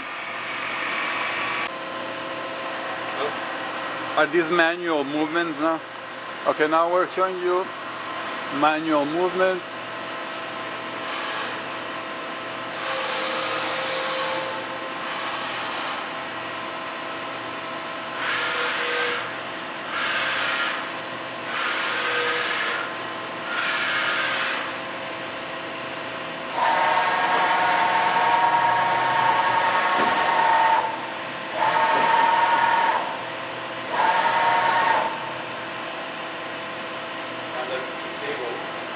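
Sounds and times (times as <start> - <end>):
machine motor and slide whine: 12.6 - 16.4, 26.5 - 33.2.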